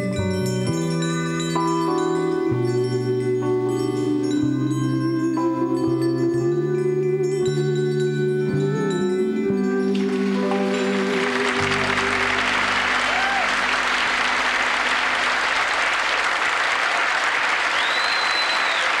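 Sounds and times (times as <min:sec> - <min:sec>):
held chord of accompaniment: 0:00.0 - 0:16.9
audience applauding: 0:09.9 - 0:19.0.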